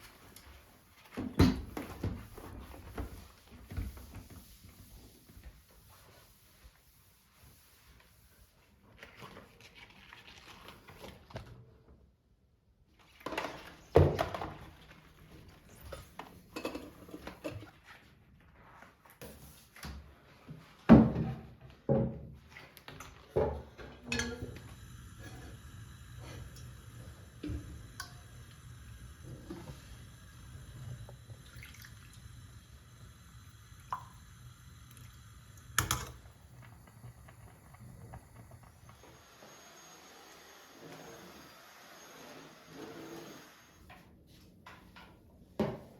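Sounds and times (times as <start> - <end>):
kitchenware knocks and clunks: 1.2 - 2.3, 20.9 - 22.4, 23.3 - 24.6
kitchen handling sounds: 15.9 - 17.7, 21.0 - 25.6.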